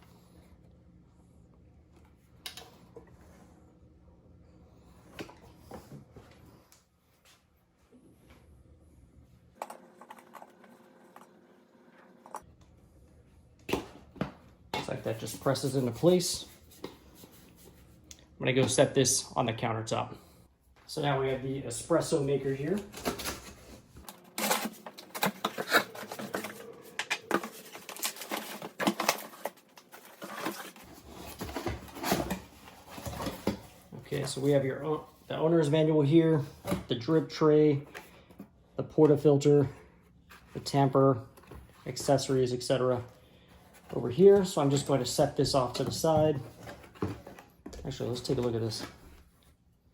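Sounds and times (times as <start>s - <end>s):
packaging rustling: 22.5s - 33.8s.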